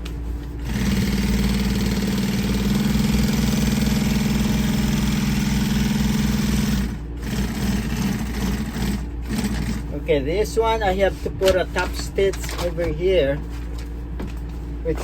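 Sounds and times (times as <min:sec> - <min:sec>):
sewing machine running: 0:00.6 - 0:09.8.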